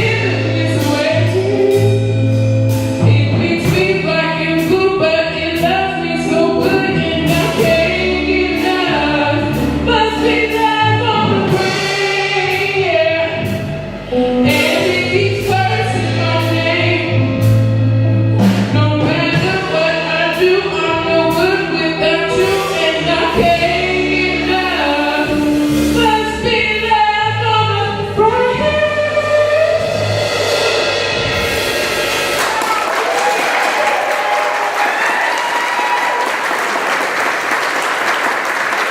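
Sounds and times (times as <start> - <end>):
sustained bass line: 0.0 - 33.2
audience applause: 32.4 - 38.9.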